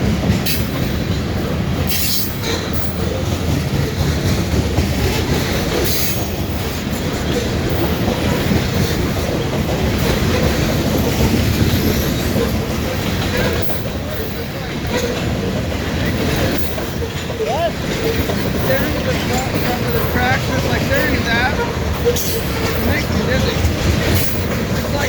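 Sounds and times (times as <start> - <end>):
freight train rumbling: 0.0 - 25.0
wheels clattering on rails: 0.0 - 25.0
high wheel squeal: 1.9 - 3.2, 9.9 - 25.0.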